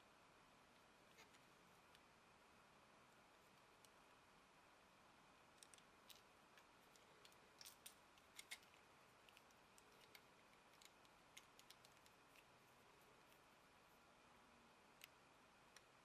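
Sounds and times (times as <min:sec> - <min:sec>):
small clicks: 0:05.5 - 0:12.5.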